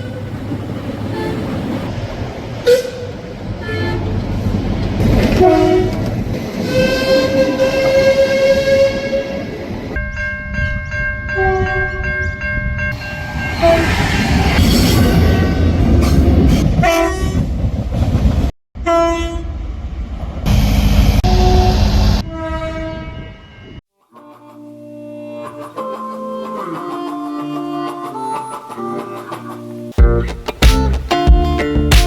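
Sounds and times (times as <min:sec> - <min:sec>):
train rumbling on track: 0:00.0 - 0:23.8
train horn blasts: 0:01.1 - 0:01.6, 0:02.6 - 0:04.3, 0:05.2 - 0:09.5, 0:11.3 - 0:12.1, 0:16.8 - 0:17.4, 0:18.8 - 0:19.5, 0:21.2 - 0:23.6.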